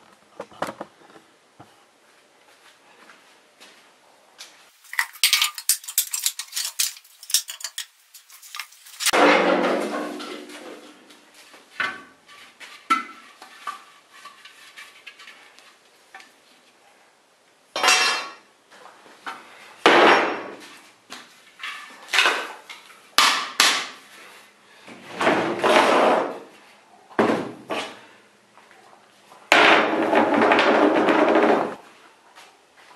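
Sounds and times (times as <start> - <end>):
scraping: 4.7 - 9.2
hard objects clanking and knocking: 4.8 - 10.8.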